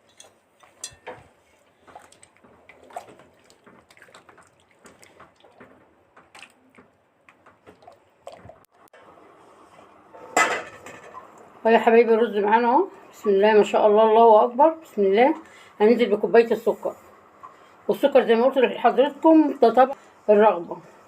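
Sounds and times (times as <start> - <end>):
liquid sloshing in a pot: 0.0 - 8.9.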